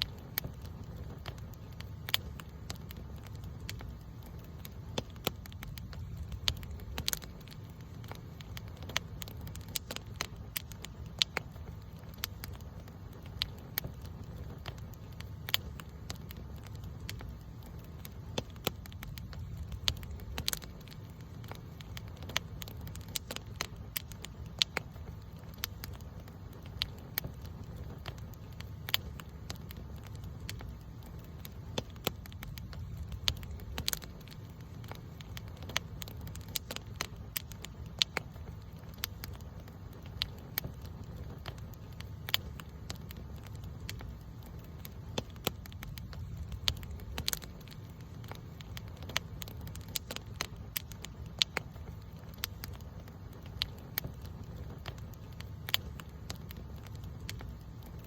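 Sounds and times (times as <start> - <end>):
campfire crackling and popping: 0.0 - 58.0
fire low rumble: 0.0 - 58.0.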